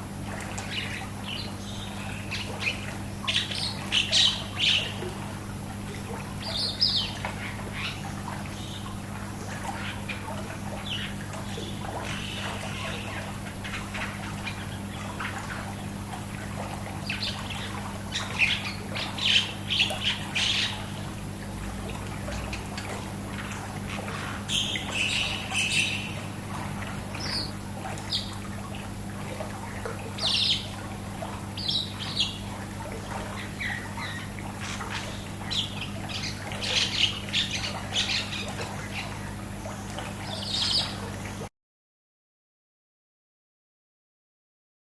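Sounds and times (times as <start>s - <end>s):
faint pool water: 0.0s - 41.5s
steady low hum: 0.0s - 41.5s
songbirds chirping: 0.5s - 21.2s, 22.0s - 28.9s, 29.6s - 41.2s
squawk-like bird calls: 9.7s - 15.6s, 17.0s - 20.9s, 23.9s - 26.3s.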